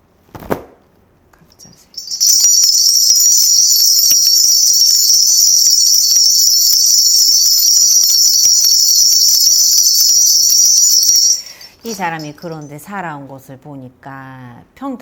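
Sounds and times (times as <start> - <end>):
bell cluster jingling: 1.5 - 13.0.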